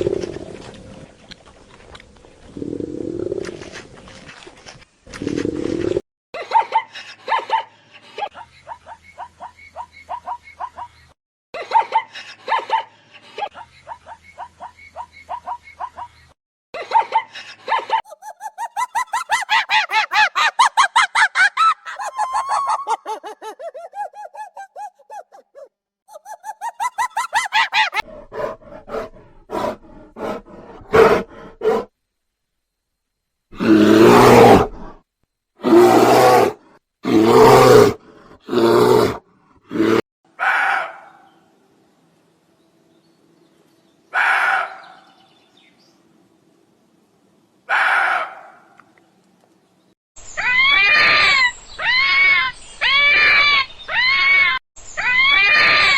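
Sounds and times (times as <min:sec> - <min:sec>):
wild animal roaring: 0:00.0 - 0:01.2, 0:02.5 - 0:03.7, 0:33.5 - 0:35.0, 0:35.6 - 0:40.0
bird calling: 0:21.9 - 0:25.7.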